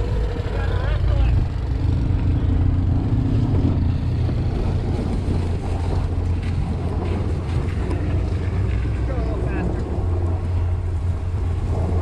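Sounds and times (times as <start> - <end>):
vehicle engine drone: 0.0 - 12.0
wind rumbling on microphone: 0.0 - 12.0.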